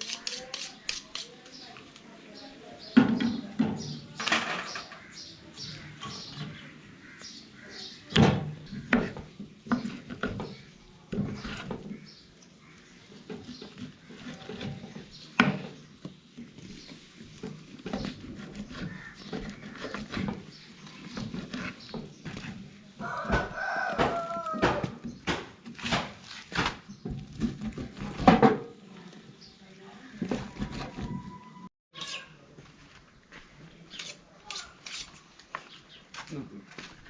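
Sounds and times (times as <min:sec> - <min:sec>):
rooster crowing: 0:23.0 - 0:25.0.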